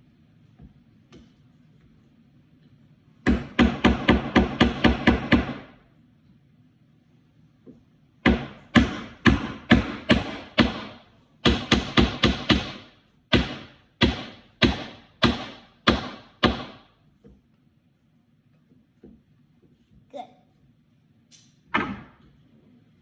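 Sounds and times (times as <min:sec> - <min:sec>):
hammer driving nails into wood: 0:03.3 - 0:05.7, 0:08.2 - 0:16.9.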